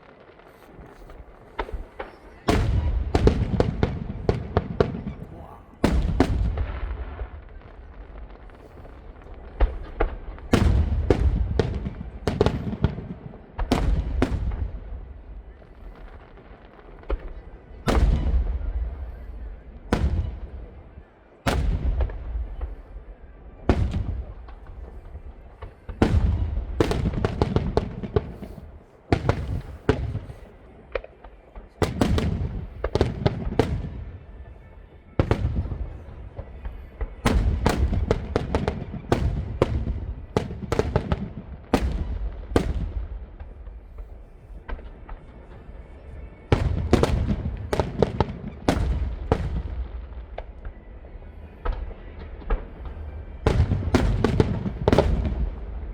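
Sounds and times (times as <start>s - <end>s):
fireworks bangs: 0.0s - 55.9s
fireworks crackling: 0.0s - 55.9s.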